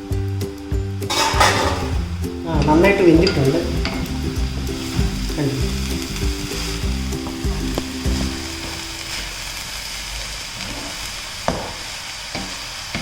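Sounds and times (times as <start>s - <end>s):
background music: 0.0s - 9.3s
food sizzling in a pan: 0.0s - 13.0s
spoon knocking against a pan: 1.1s - 2.1s.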